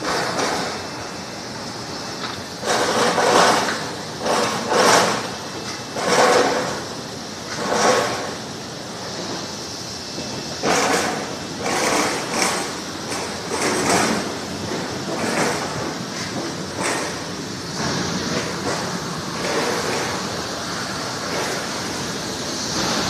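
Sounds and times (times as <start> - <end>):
machine running: 0.0 - 23.0
carrots rattling in washer: 2.6 - 8.4, 10.6 - 20.5.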